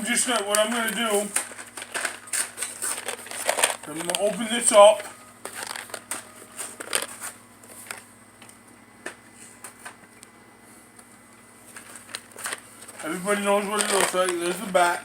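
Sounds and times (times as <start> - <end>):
candy package crinkling: 0.0 - 8.0, 11.7 - 14.8.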